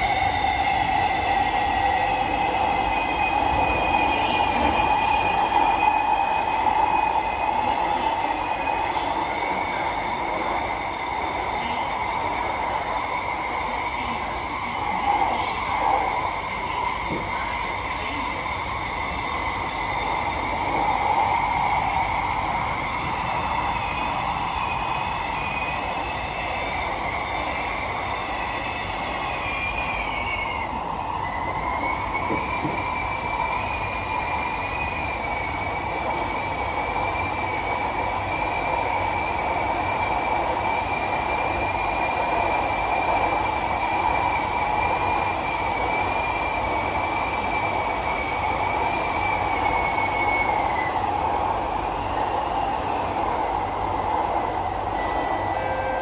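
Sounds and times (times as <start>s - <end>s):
train rumble: 0.0s - 56.0s
high-pitched train screech: 54.8s - 56.0s.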